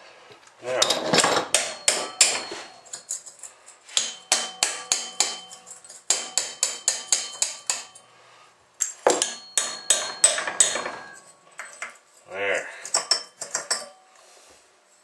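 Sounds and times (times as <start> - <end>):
hammer striking metal: 0.8 - 3.3, 3.9 - 8.1, 8.8 - 12.0.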